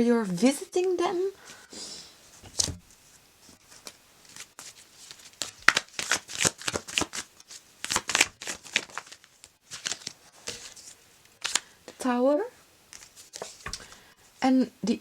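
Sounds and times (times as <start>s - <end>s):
cards being shuffled: 2.4s - 2.9s, 3.7s - 12.0s, 12.9s - 14.0s.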